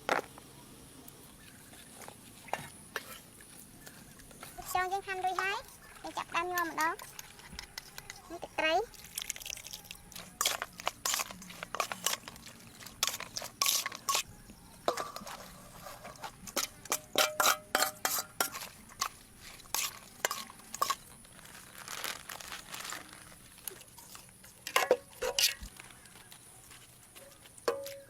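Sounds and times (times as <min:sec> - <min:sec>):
utensils clinking against a dish: 0:02.9 - 0:21.2, 0:23.7 - 0:26.1, 0:27.6 - 0:28.0.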